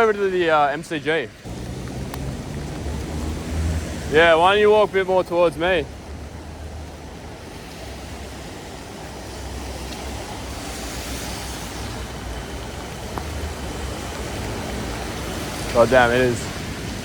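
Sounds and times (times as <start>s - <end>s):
heavy rain on street: 0.0s - 17.0s.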